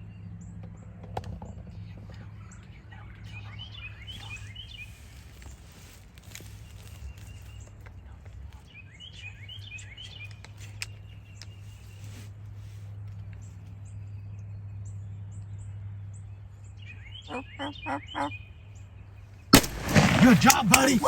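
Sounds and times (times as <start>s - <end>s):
small birds chirping: 1.7s - 12.1s, 16.3s - 21.0s.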